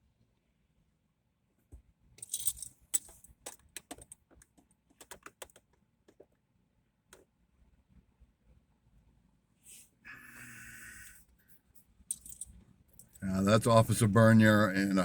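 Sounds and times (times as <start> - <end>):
light clicks and rattles: 2.2 - 6.4.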